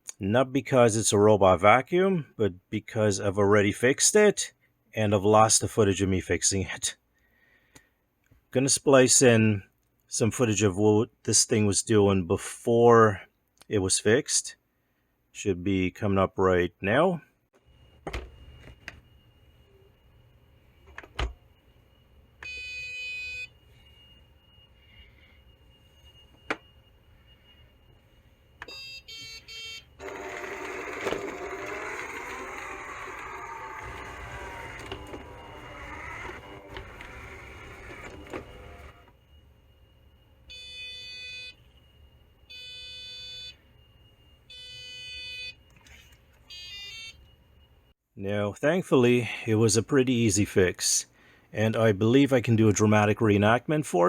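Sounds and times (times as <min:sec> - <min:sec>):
robot vacuum beeping: 0:28.6 - 0:39.2
vacuum motors and brushes running: 0:30.0 - 0:39.1.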